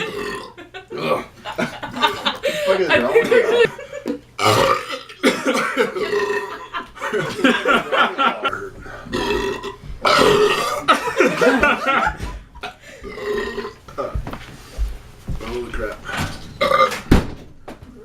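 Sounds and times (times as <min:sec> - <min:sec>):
man burping loudly: 0:00.0 - 0:01.4, 0:04.4 - 0:07.4, 0:08.5 - 0:11.1, 0:13.0 - 0:14.2, 0:16.6 - 0:17.0.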